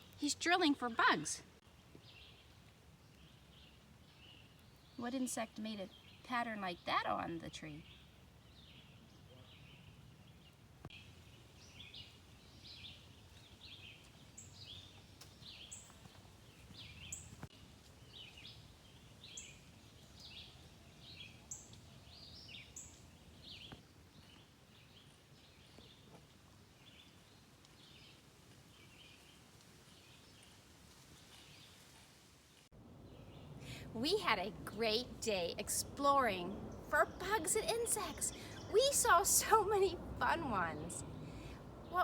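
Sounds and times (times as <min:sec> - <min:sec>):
low background rumble: 0:32.8 - 0:42.0
birds chirping: 0:32.9 - 0:42.0.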